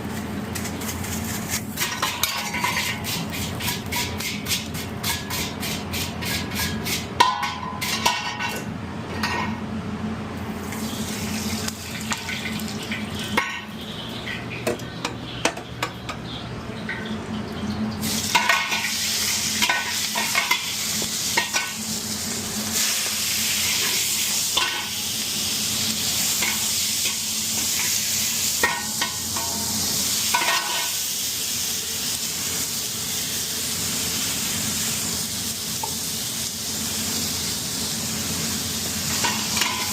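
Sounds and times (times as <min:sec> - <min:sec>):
food sizzling: 0:00.0 - 0:07.2, 0:10.5 - 0:15.1, 0:17.4 - 0:39.9
utensil scraping in a pan: 0:00.0 - 0:08.6, 0:39.0 - 0:39.9.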